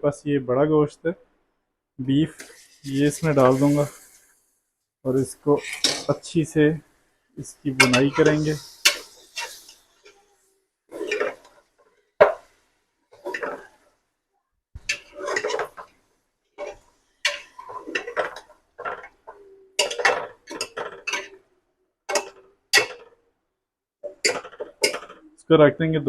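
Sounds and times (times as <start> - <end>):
spoon scraping inside a pot: 2.3 - 4.4, 5.5 - 6.2, 7.8 - 11.6, 14.9 - 15.8.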